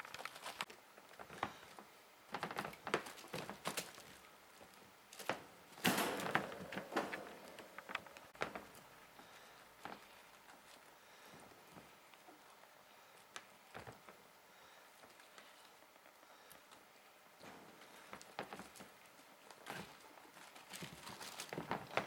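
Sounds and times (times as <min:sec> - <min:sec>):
rustling scuffle: 0:00.0 - 0:12.2, 0:17.5 - 0:22.0
kittens tapping and scrabbling: 0:00.0 - 0:14.2, 0:17.4 - 0:22.0.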